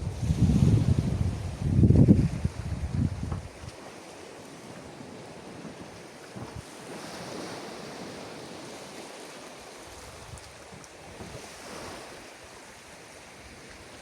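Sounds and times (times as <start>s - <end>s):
wind buffeting microphone: 0.0s - 3.7s
surf washing onto beach: 0.0s - 14.0s.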